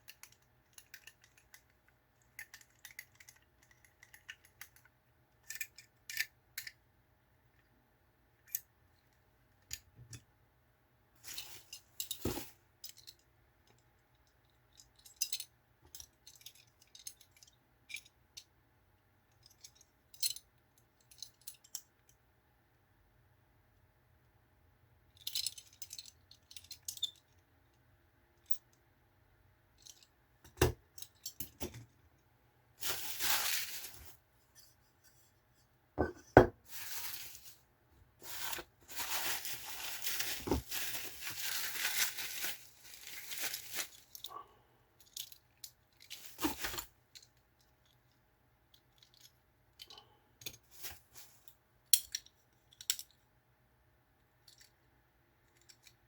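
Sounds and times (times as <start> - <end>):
small clicks of hard objects: 0.0 - 6.8, 54.4 - 54.8, 55.4 - 56.0
packaging tearing and rustling: 32.8 - 34.2, 36.7 - 37.6, 38.2 - 44.1
hard objects knocking: 36.0 - 36.6.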